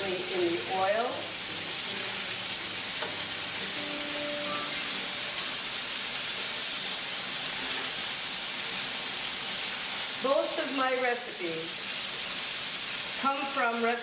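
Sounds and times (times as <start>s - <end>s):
potatoes sizzling in frying pan: 0.0s - 14.0s.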